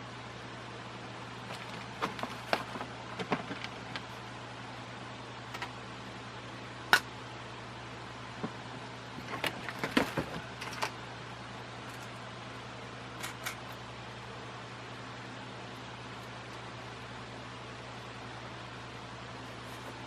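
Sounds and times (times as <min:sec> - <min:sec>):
steady low hum: 0:00.0 - 0:20.0
clicks and knocks of fan parts: 0:01.4 - 0:04.1, 0:05.5 - 0:05.8, 0:08.4 - 0:11.0, 0:13.2 - 0:13.8.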